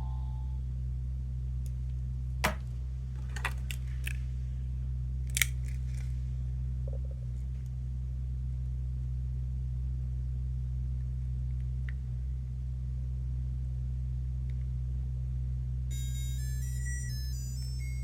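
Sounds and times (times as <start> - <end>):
steady low hum: 0.0 - 18.0
electronic beeping melody: 15.9 - 18.0.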